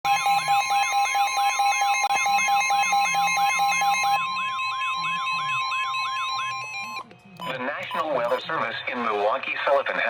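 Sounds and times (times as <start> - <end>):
siren-like warble: 0.1 - 7.1
steady alarm tone: 0.1 - 8.4
rapid beeping: 0.1 - 8.5.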